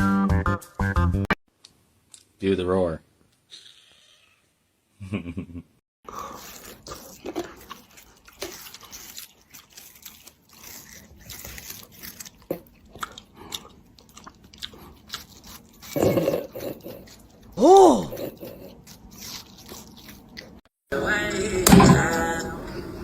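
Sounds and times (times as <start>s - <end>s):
crunchy chewing and biting: 6.1s - 20.7s.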